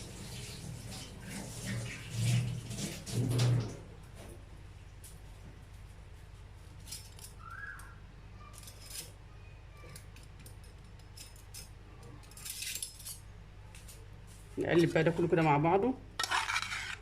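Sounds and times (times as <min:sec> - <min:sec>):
kitchen things clinking and rustling: 0:09.8 - 0:14.1, 0:16.2 - 0:17.0.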